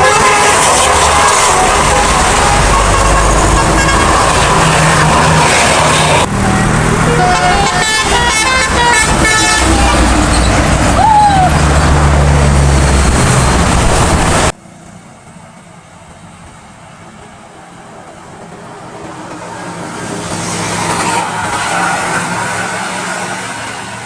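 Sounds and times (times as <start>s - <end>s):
loud vehicle engine: 0.0s - 17.2s
road vehicles passing: 0.0s - 24.0s.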